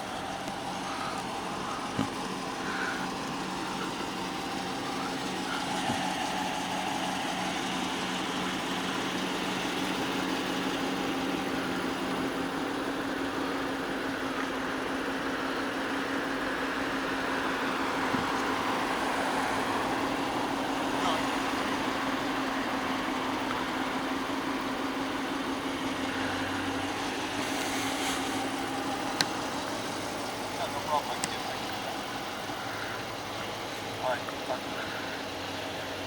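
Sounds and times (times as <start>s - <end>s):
vehicle engine idling: 0.0s - 36.0s.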